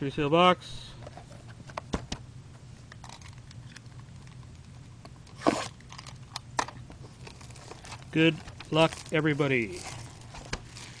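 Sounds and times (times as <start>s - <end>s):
plastic shrink-wrap tearing: 7.2s - 11.0s.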